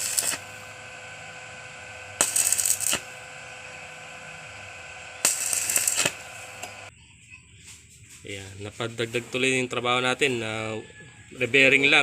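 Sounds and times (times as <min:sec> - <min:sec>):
welder humming: 0:00.0 - 0:06.9
welding arc crackling: 0:00.0 - 0:06.9.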